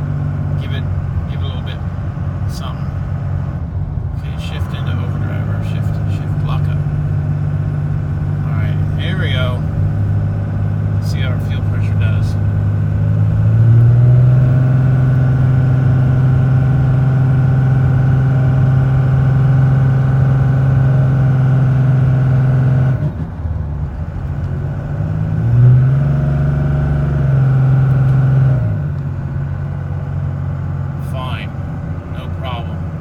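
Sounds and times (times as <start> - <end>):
diesel truck engine pulling uphill: 0.0 - 33.0.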